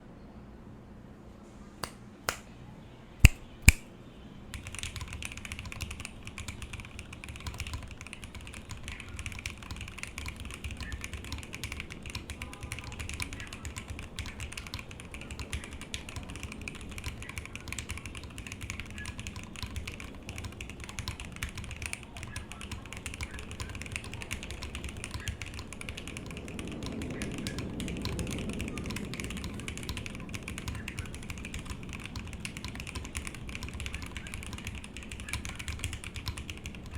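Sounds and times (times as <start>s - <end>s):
sharp loud clicks: 3.2s - 3.9s
fast keyboard typing: 4.5s - 36.9s.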